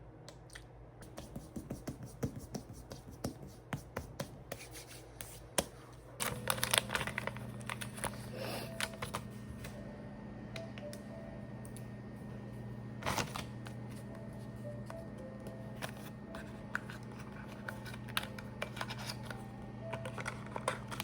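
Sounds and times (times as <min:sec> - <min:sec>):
steady low hum: 0:00.0 - 0:21.0
handling noises: 0:06.1 - 0:09.8, 0:13.0 - 0:21.0.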